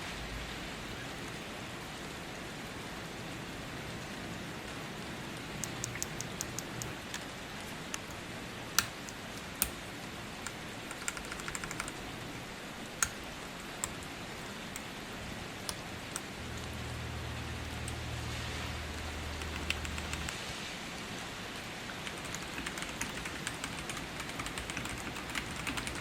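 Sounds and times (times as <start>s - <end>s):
rain hissing: 0.0s - 26.0s
mechanical keyboard clicks: 5.6s - 12.2s, 12.8s - 15.0s, 19.3s - 20.4s, 22.0s - 26.0s.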